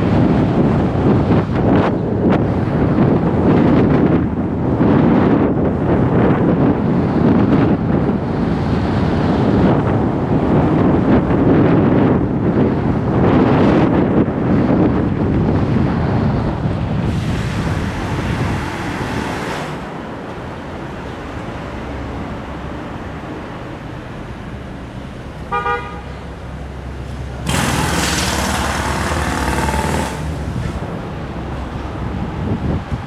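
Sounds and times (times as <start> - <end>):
street traffic: 0.0 - 33.0
wind buffeting microphone: 0.0 - 33.0
loud rushing hiss: 17.0 - 22.9, 27.3 - 31.0.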